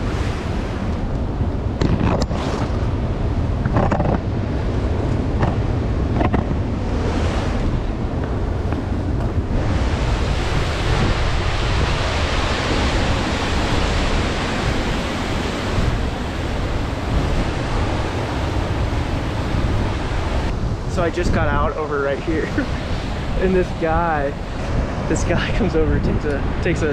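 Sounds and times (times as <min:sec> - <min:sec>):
wind buffeting microphone: 0:00.0 - 0:26.9.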